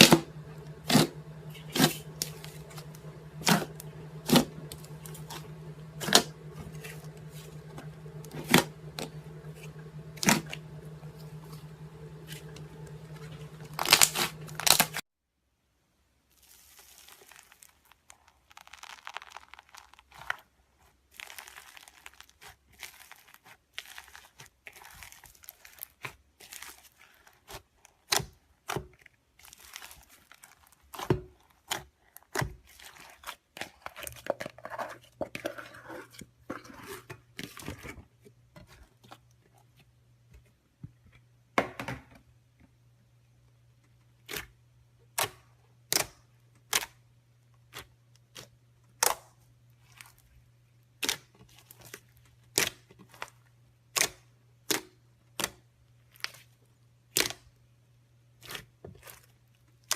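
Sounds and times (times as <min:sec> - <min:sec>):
slime crackling and popping: 0:00.0 - 0:15.0, 0:16.4 - 0:20.4, 0:21.1 - 0:27.4.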